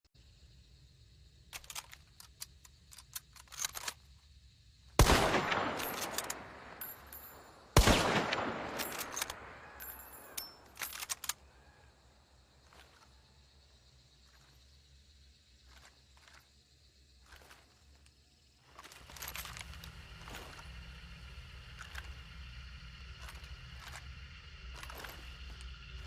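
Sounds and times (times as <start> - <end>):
rifle bolt clicks: 1.5 - 4.0, 5.0 - 7.2, 7.8 - 11.4
rifle shots echoing: 5.0 - 10.6.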